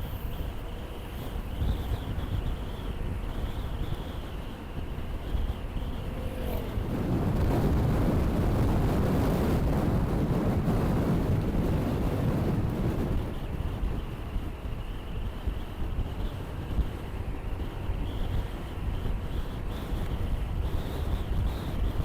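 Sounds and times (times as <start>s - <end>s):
motorcycle engine rumble: 0.0s - 14.4s
road noise: 0.0s - 22.0s
wind buffeting microphone: 0.0s - 22.0s.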